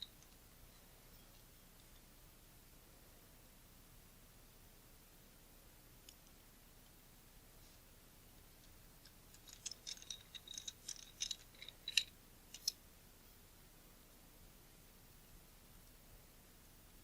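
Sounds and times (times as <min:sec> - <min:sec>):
small metal clicks and ticks: 0:08.6 - 0:12.8.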